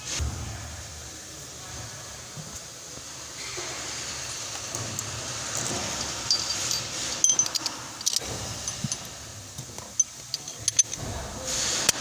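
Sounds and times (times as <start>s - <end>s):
steady background hum: 0.0s - 12.0s
metallic clicks and clinks: 5.6s - 11.1s.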